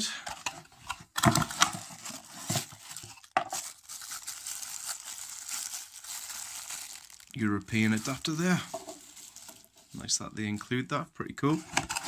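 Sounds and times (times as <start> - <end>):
plastic packaging crinkling: 1.2 - 10.1.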